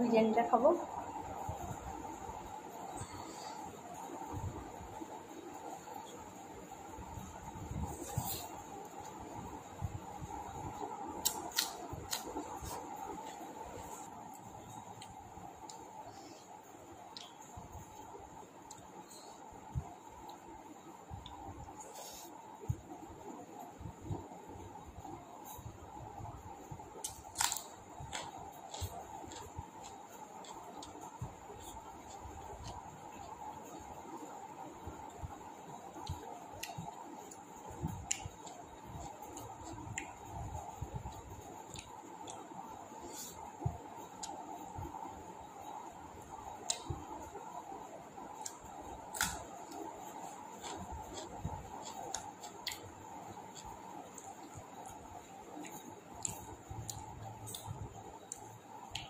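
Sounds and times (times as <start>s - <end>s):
faint steady hiss: 0.0s - 59.0s
food being mixed and chewed: 10.5s - 19.3s, 26.7s - 45.0s, 45.7s - 59.0s.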